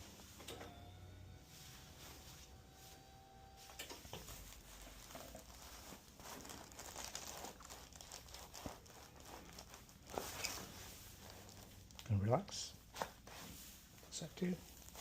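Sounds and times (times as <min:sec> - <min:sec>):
hands rustling and crinkling: 0:03.7 - 0:15.0.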